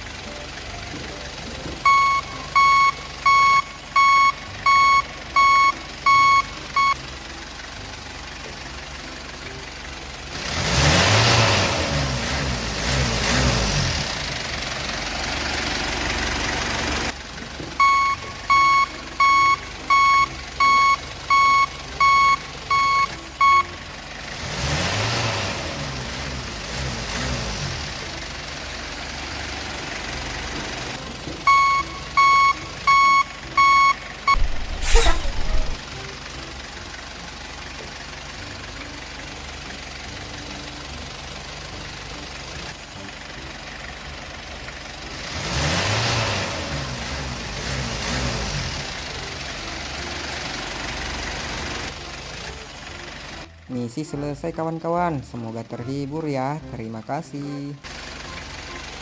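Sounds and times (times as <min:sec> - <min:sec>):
electronic reversing beeper: 0:31.5 - 0:35.9.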